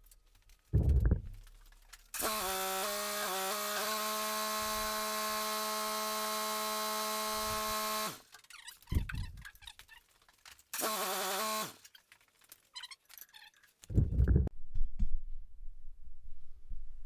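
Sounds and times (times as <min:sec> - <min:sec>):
low rumbling handling noise: 0:00.7 - 0:01.6, 0:08.9 - 0:09.6, 0:13.9 - 0:15.8
loud low thump: 0:00.8 - 0:01.4
cordless power tool whine: 0:02.2 - 0:08.2, 0:10.8 - 0:11.8.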